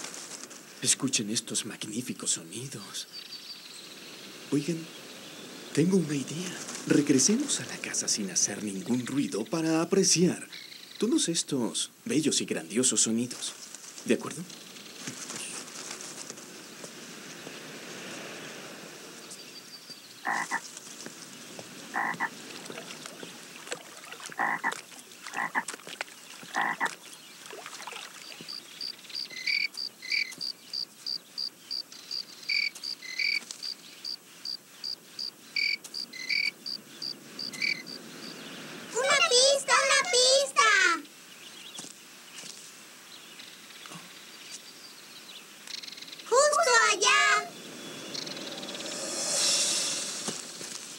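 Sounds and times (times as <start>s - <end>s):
frog croaks: 20.2s - 20.6s, 21.9s - 27.0s, 28.5s - 33.4s, 34.0s - 38.0s.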